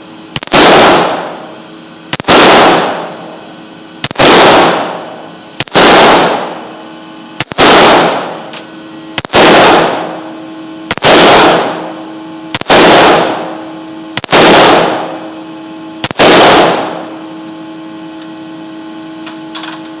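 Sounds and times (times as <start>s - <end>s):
rifle shots echoing: 0.4s - 1.5s, 2.1s - 3.3s, 4.0s - 6.7s, 7.4s - 8.5s, 9.2s - 10.3s, 10.9s - 13.6s, 14.2s - 15.2s, 16.0s - 17.2s.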